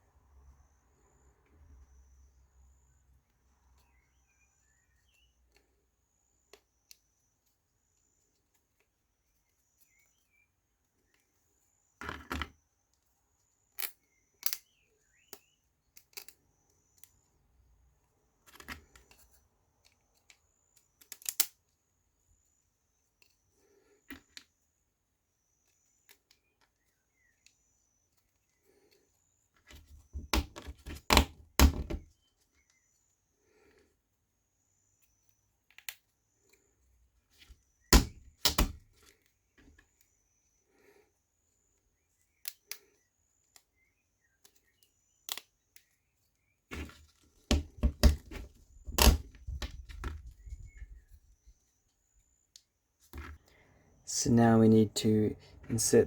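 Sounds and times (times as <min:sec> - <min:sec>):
wooden puzzle pieces knocking: 0:29.7 - 0:32.1, 0:37.9 - 0:38.8, 0:46.7 - 0:50.3.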